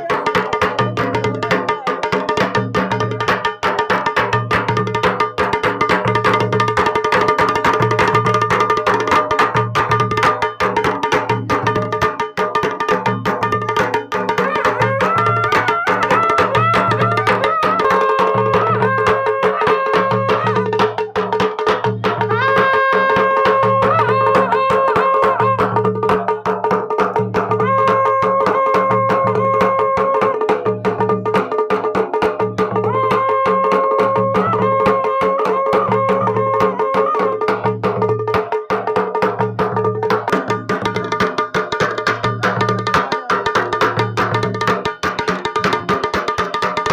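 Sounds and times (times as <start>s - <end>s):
drums in quick rhythm: 0.0s - 46.9s.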